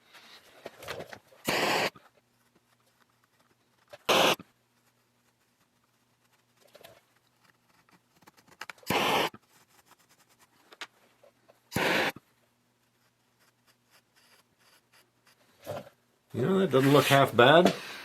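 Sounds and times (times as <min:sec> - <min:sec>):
low electrical hum: 0:00.0 - 0:18.0
loud hiss bursts: 0:01.4 - 0:02.0, 0:04.0 - 0:04.4, 0:08.9 - 0:09.4, 0:11.7 - 0:12.2
hot wire tool scraping plastic: 0:02.0 - 0:10.8.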